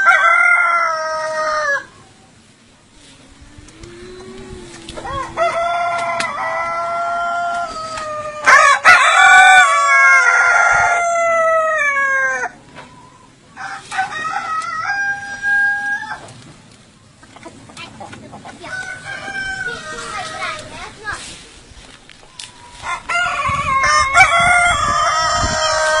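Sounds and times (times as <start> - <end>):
long drawn-out animal call: 3.1 - 8.0.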